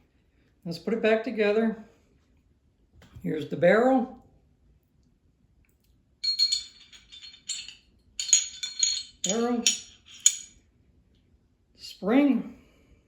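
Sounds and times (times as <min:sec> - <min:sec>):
pistol parts clinking: 0:06.2 - 0:10.6.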